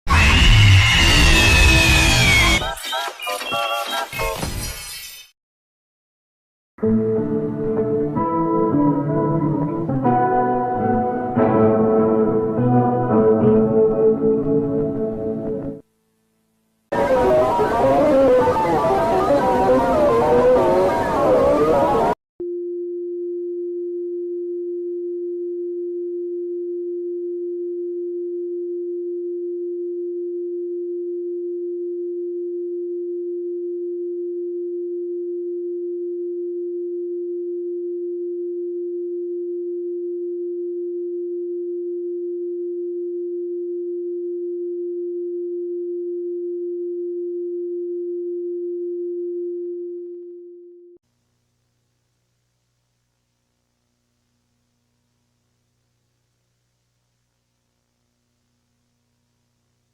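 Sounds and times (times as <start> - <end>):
music: 6.8 - 15.8
steady electronic sine tone: 16.9 - 51.0.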